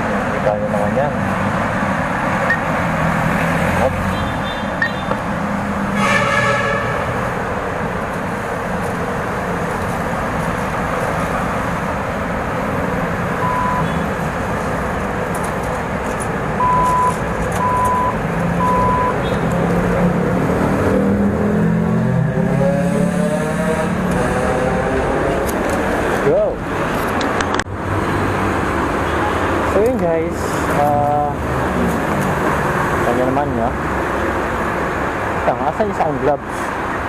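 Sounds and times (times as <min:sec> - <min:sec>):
short beeps: 0:13.4 - 0:14.0, 0:16.6 - 0:19.3.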